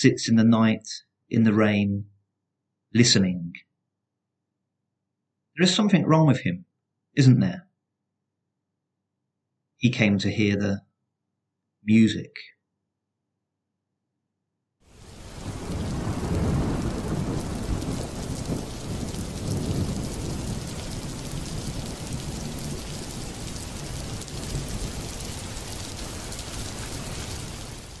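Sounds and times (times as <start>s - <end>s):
rain falling: 14.9s - 28.0s
low rolling thunder: 15.0s - 28.0s.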